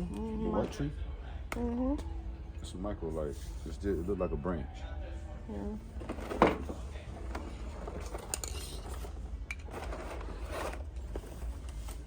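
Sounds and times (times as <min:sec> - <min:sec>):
scraping and rustling handling: 0:06.0 - 0:12.0.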